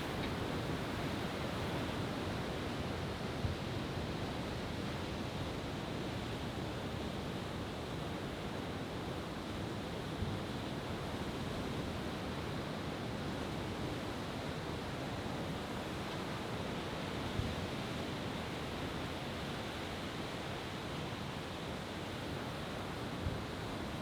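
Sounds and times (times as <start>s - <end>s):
wind: 0.0s - 3.0s.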